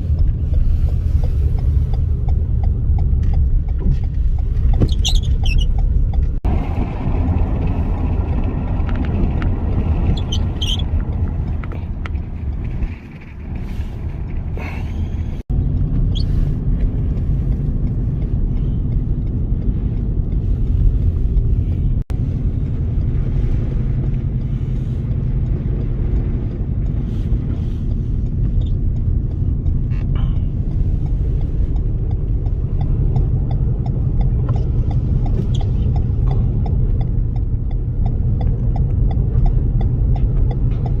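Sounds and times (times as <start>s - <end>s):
faint regular ticking: 0.0s - 6.4s, 15.4s - 41.0s
vehicle and road rumble: 0.0s - 41.0s.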